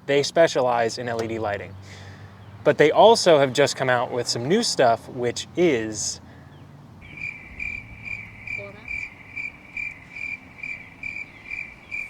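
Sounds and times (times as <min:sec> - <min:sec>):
cricket chirping: 0:07.0 - 0:12.0.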